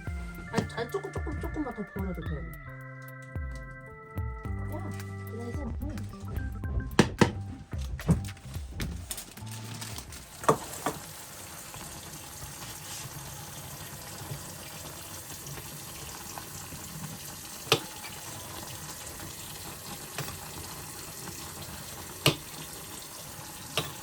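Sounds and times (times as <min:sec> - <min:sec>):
pot knocking: 0:06.4 - 0:08.1
water pouring from a pot: 0:09.1 - 0:24.0.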